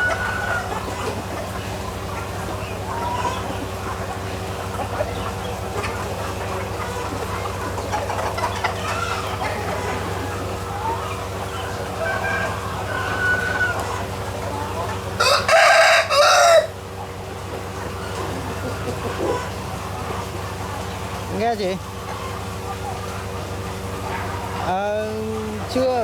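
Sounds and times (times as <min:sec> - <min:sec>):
rooster crowing: 0:00.0 - 0:00.8, 0:08.8 - 0:16.8
chickens clucking: 0:00.0 - 0:26.0.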